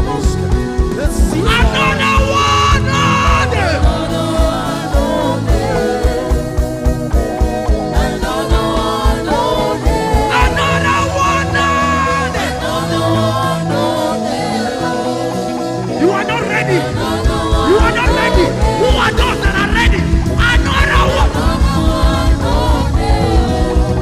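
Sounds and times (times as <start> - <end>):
voices singing: 0.0 - 24.0
band drum beat: 0.2 - 11.4, 17.0 - 24.0.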